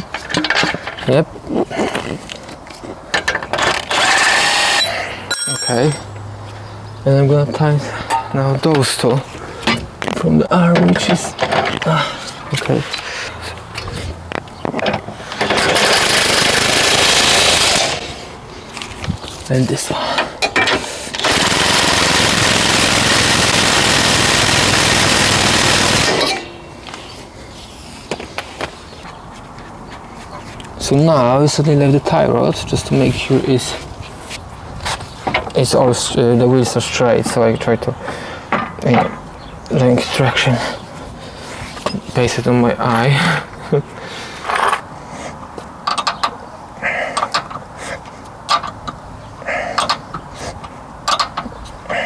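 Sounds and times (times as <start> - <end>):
impact wrench running: 3.9 - 4.9, 15.4 - 18.1, 21.2 - 26.6
hand tools clicking on metal: 20.2 - 27.0, 49.8 - 50.3.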